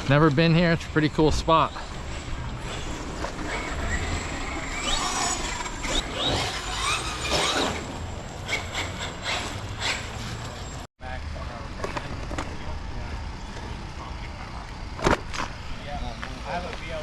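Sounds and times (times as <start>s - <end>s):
toy car motors whining: 1.7s - 10.8s.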